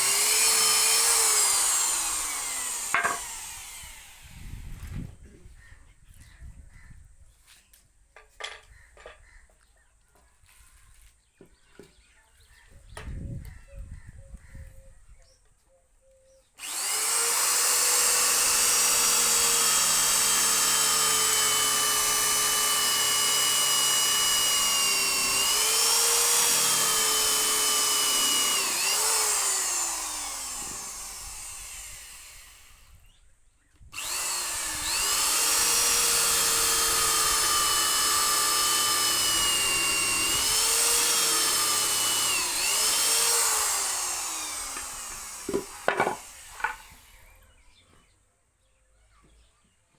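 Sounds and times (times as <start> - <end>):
power tool motor whining: 0.0 - 5.2, 16.6 - 33.2, 33.9 - 47.7.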